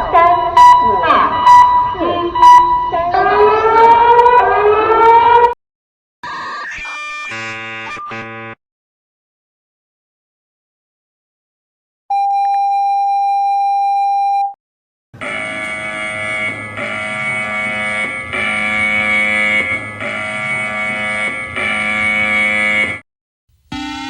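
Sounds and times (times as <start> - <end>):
steady beep tone: 0.0 - 3.6
harsh buzzing multi-tone alarm: 0.0 - 5.6, 6.2 - 8.6, 15.2 - 23.0, 23.7 - 24.0
rising siren: 0.0 - 5.6, 15.2 - 23.0, 23.7 - 24.0.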